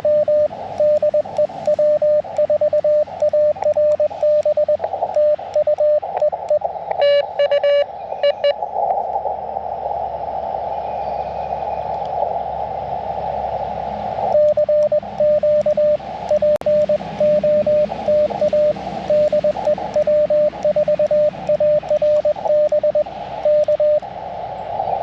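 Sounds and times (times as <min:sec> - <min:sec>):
morse code beeps: 0:00.0 - 0:08.6, 0:14.2 - 0:24.1
radio band noise hiss: 0:00.0 - 0:25.0.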